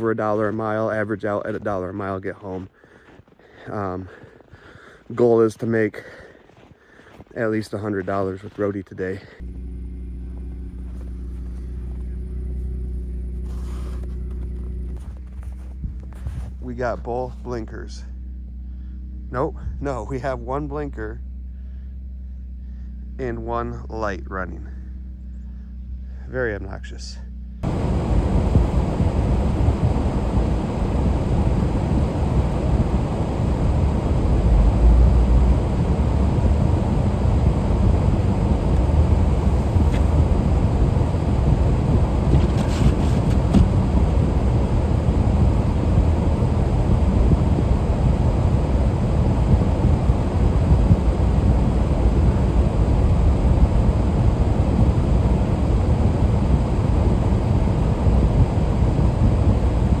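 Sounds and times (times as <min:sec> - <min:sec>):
vehicle engine and road noise: 0:09.4 - 0:19.7, 0:27.3 - 1:00.0.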